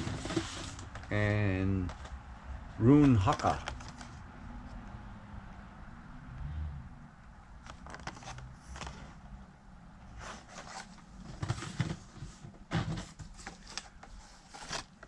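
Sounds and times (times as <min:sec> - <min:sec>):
cardboard and plastic packs handled: 0:00.0 - 0:02.2, 0:02.8 - 0:04.2, 0:07.6 - 0:09.2, 0:10.2 - 0:15.0.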